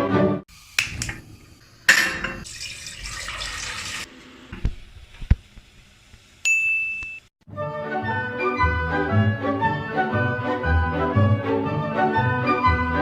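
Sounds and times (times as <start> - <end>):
water running from a tap: 0.5 - 4.1.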